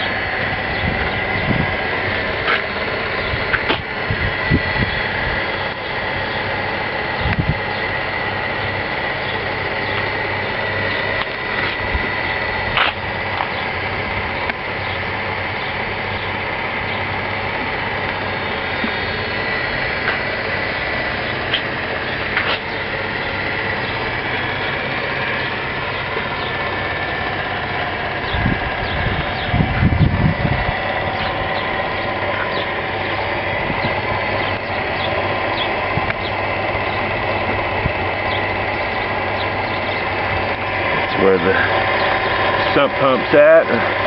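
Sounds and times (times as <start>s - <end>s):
grinder machine hum and whine: 0.0s - 44.0s.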